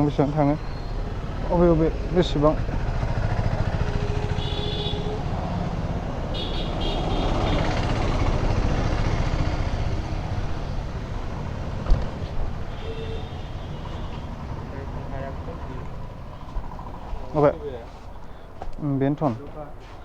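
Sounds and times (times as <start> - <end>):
street traffic noise: 0.0 - 20.0
vehicle passing: 0.0 - 20.0.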